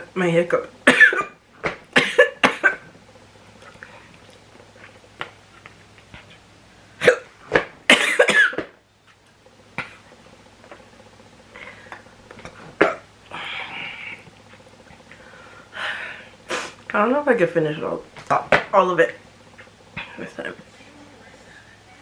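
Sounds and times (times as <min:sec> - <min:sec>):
woman hiccuping: 0:07.0 - 0:08.6.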